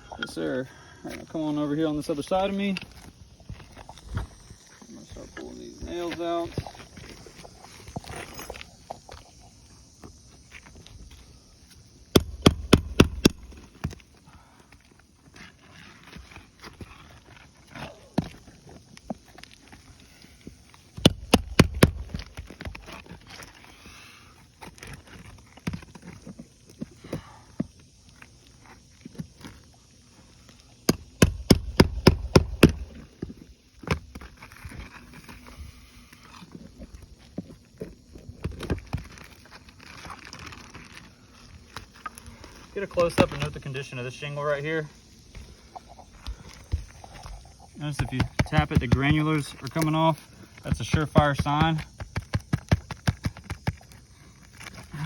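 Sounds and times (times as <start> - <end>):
rapid sharp knocks on nail puller: 12.2 - 13.5, 21.0 - 22.0, 30.9 - 32.8.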